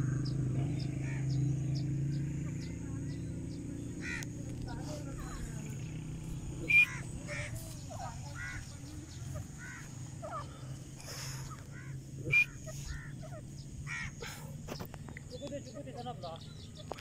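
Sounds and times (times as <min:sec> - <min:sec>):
steady low hum: 0:00.0 - 0:16.8
loud sharp bird calls: 0:00.0 - 0:17.0
faint short bird calls: 0:06.6 - 0:15.0.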